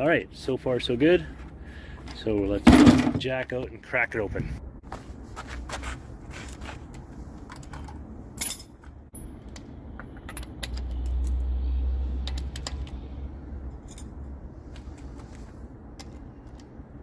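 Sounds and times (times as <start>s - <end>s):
metal tools clinking and rattling: 2.0s - 3.3s
sharp metal clank: 2.7s - 3.2s.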